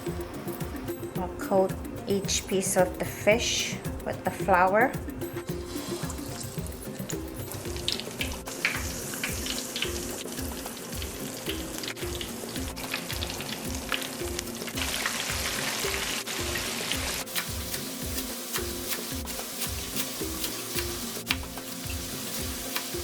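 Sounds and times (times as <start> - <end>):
background music with steady beat: 0.0 - 23.0
fish frying in hot oil: 5.6 - 23.0.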